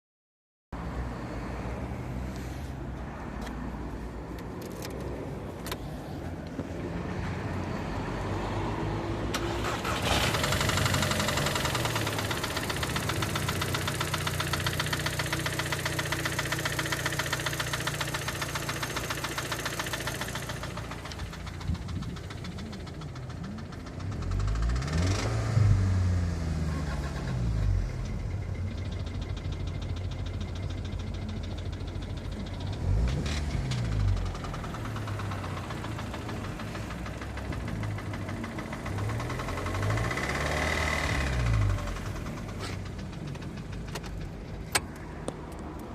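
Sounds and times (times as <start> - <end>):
car engine with metallic knock: 10.4 - 25.3, 27.7 - 45.9.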